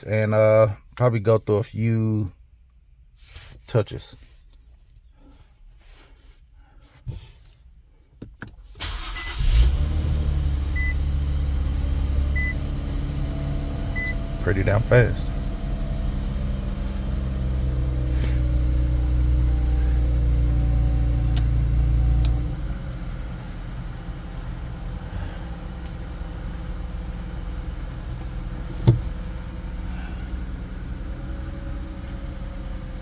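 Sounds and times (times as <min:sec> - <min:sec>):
car engine idling: 0:08.8 - 0:33.0.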